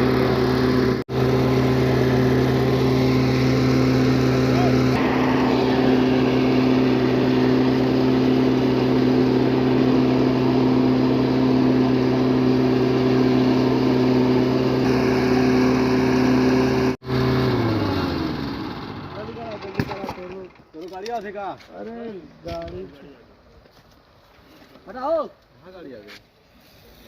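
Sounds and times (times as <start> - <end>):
small engine running: 0.0 - 20.5.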